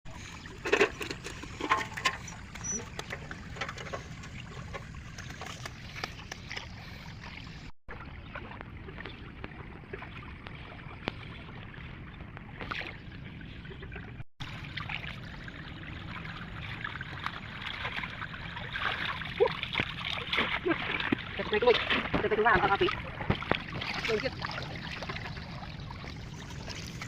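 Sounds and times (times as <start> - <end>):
floodwater running and trickling: 0.1 - 27.0
small splashes: 0.1 - 27.0.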